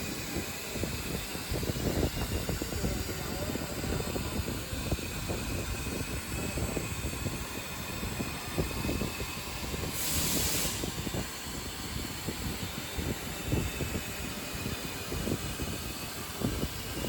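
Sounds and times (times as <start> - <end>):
laser cutting machine rumbling: 0.0 - 17.0
short hiss: 10.0 - 10.9.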